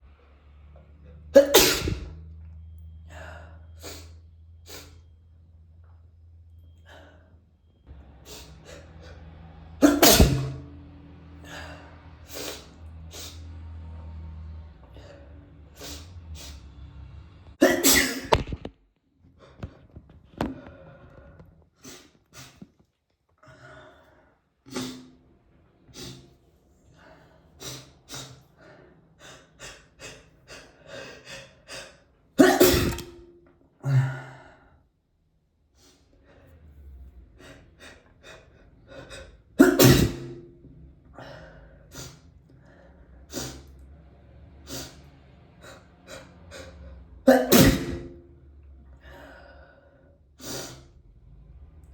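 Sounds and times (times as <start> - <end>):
person sneezing: 1.4 - 2.1, 9.8 - 10.6, 17.6 - 18.6, 32.4 - 33.1, 39.6 - 40.4, 47.3 - 48.1.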